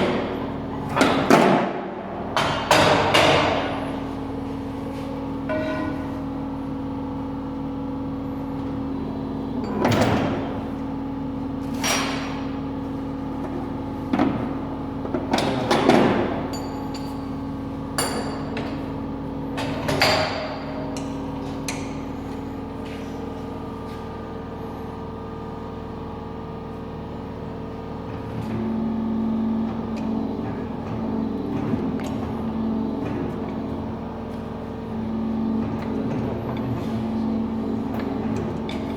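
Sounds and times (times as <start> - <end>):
workshop machinery humming: 0.0 - 38.9
sharp metallic knocks and clanks: 2.4 - 3.7.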